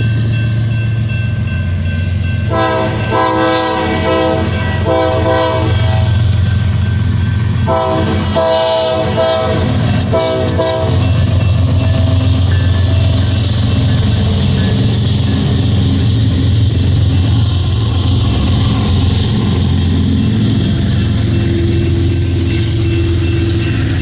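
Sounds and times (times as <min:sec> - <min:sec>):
diesel locomotive engine rumble: 0:00.0 - 0:24.0
locomotive air horn blasts: 0:02.5 - 0:06.3, 0:07.6 - 0:11.1.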